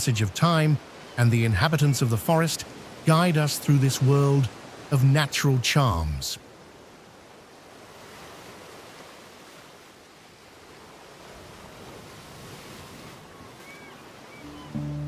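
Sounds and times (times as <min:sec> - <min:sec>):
rushing rainforest ambience: 0:00.0 - 0:11.3
faint bird chirps: 0:13.3 - 0:15.0.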